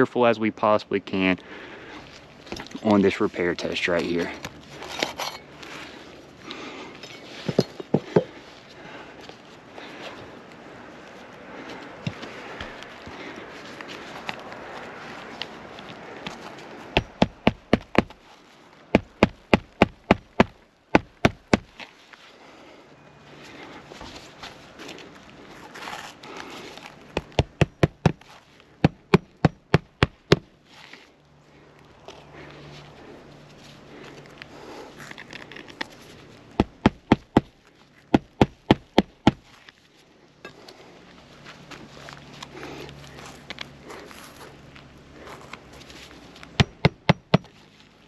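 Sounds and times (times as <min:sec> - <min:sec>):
hammer striking roofing nail: 0:17.0 - 0:18.1, 0:28.8 - 0:30.4, 0:36.6 - 0:37.5, 0:38.2 - 0:39.4, 0:46.6 - 0:47.5
hammer striking nail: 0:46.6 - 0:47.5.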